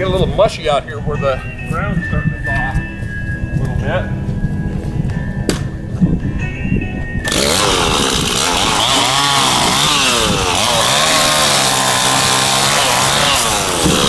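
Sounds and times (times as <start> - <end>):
chainsaw cutting wood: 7.2 - 14.0.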